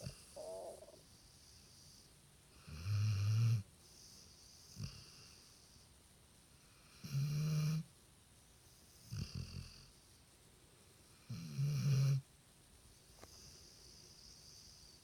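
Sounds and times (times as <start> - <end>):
dog snoring: 0.0 - 5.7, 6.7 - 7.9, 9.0 - 9.9, 11.2 - 12.2.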